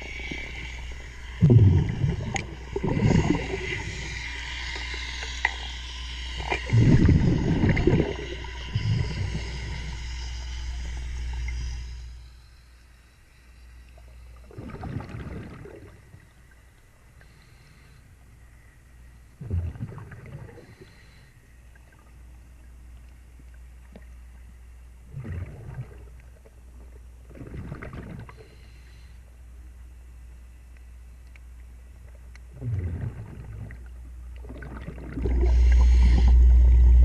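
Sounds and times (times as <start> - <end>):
underwater breath bubbles: 0.0 - 12.1, 14.4 - 16.0, 32.6 - 37.0
steady low hum: 0.0 - 37.0.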